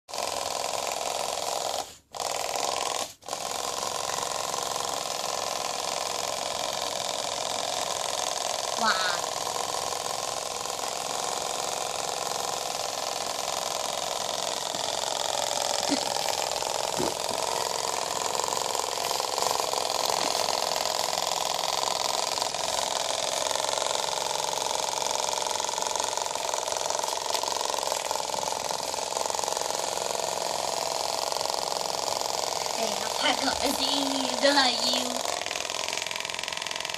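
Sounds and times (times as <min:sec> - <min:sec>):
small motor buzzing and rattling plastic: 0:00.1 - 0:36.9.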